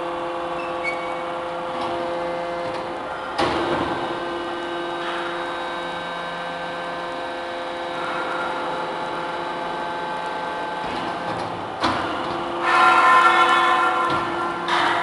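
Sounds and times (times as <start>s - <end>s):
hydraulic baler whining: 0.0s - 15.0s.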